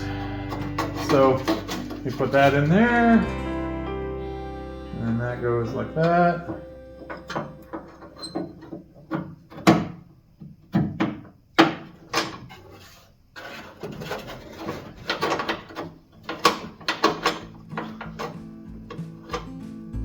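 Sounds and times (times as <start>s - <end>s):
scraping rustle: 0.0s - 3.0s, 12.3s - 18.5s
latch parts clicking and knocking: 0.5s - 2.6s, 6.5s - 12.6s, 13.8s - 19.5s.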